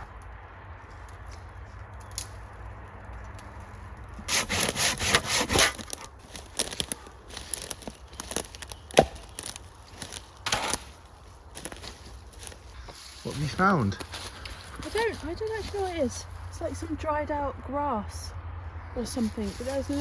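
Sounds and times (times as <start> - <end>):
wood cracking: 0.0 - 16.6
rasping sawing strokes: 4.2 - 6.7.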